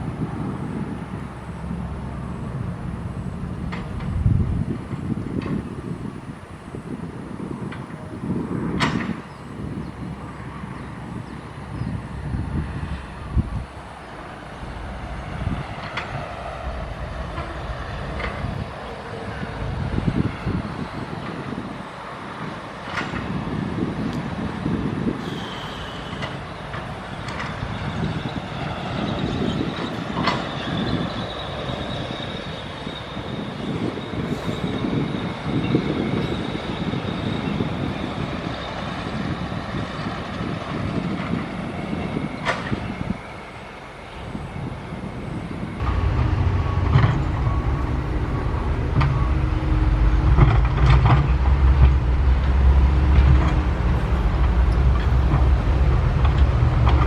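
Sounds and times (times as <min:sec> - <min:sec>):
excavator diesel engine: 0:07.8 - 0:34.3, 0:34.9 - 0:57.0
high-pitched hydraulic whine: 0:25.2 - 0:38.9, 0:45.8 - 0:51.9.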